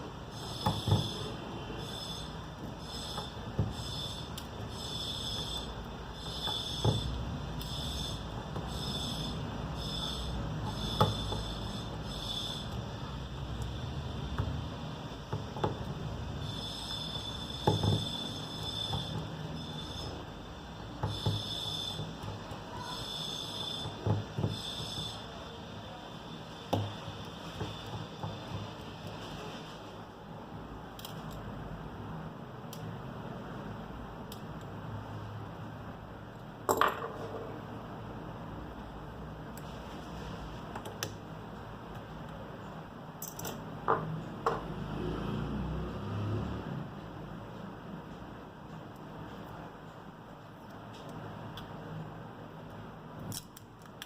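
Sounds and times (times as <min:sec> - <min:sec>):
faint steady hum: 0:00.0 - 0:45.2
small tools clicking and tapping: 0:21.0 - 0:25.3, 0:30.9 - 0:31.5, 0:43.2 - 0:44.7, 0:52.6 - 0:54.0.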